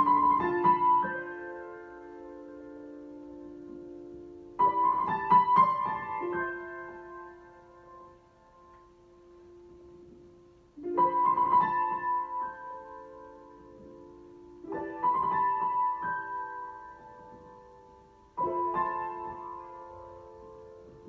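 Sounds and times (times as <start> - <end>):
slow piano chords: 0.0 - 21.0.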